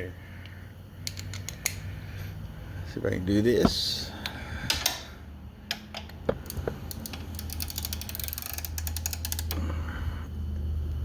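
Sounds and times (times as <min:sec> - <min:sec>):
socket ratchet clicking: 0:01.0 - 0:01.9, 0:05.7 - 0:09.6.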